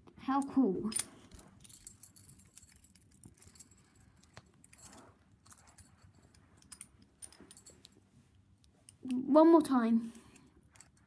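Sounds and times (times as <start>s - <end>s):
keys jangling: 0.9s - 8.0s.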